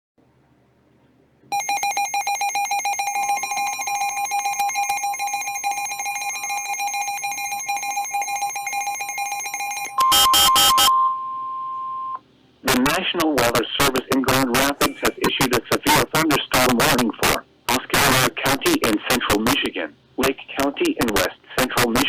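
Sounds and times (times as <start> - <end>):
rapidly pulsing alarm tone: 1.5 - 12.2
steady high-pitched alarm tone: 1.5 - 12.2.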